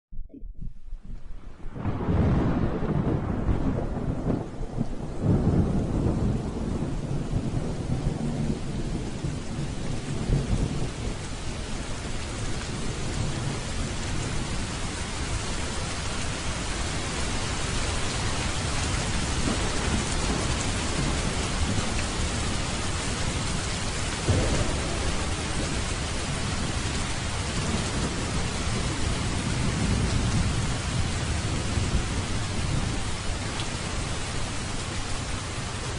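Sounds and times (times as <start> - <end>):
rolling thunder: 0.8 - 35.9
steady rain hiss: 1.1 - 35.9.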